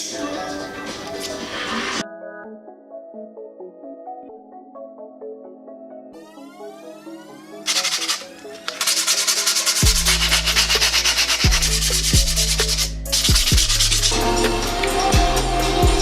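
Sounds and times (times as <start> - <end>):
rough sanding scrape: 7.7 - 15.1
hip-hop beat with sliding bass: 7.7 - 16.0.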